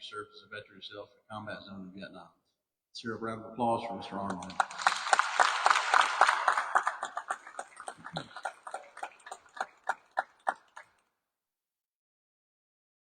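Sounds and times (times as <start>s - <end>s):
audience applauding: 4.1s - 11.0s.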